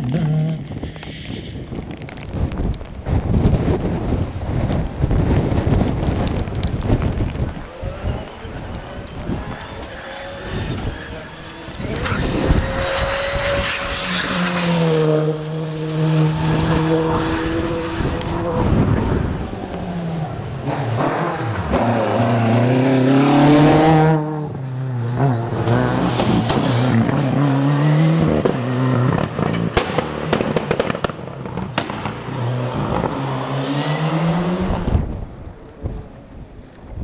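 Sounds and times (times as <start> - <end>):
rally car engine at full throttle: 0.0 - 37.0
sharp cracks: 29.2 - 33.2.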